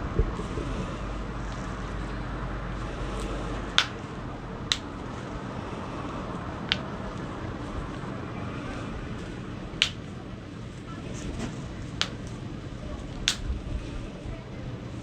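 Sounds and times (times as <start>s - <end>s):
joints cracking: 3.8s - 4.0s, 9.8s - 10.1s, 13.2s - 13.4s.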